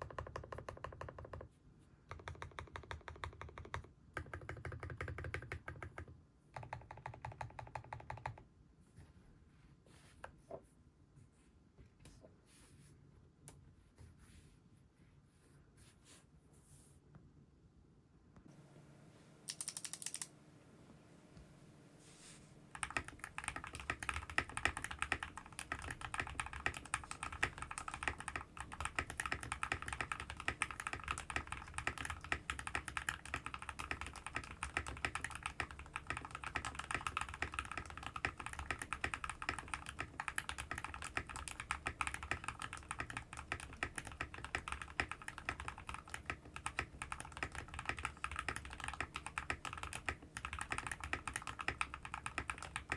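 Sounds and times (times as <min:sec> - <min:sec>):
mechanical keyboard typing: 0:00.0 - 0:01.5, 0:02.1 - 0:08.4, 0:19.5 - 0:20.3, 0:22.7 - 0:52.9.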